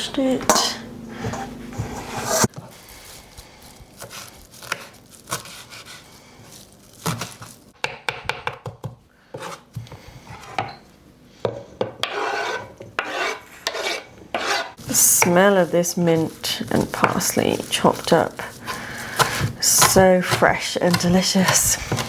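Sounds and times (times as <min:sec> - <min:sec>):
knife chopping herbs on board: 0:04.0 - 0:06.0, 0:16.2 - 0:22.0.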